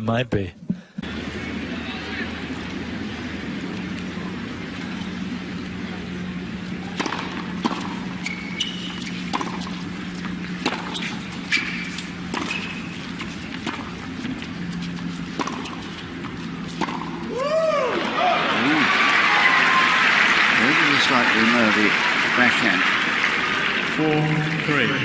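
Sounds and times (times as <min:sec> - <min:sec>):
stadium hum: 0:00.0 - 0:25.0
shoes squeaking on court: 0:02.6 - 0:17.3
racket striking ball: 0:06.7 - 0:17.3.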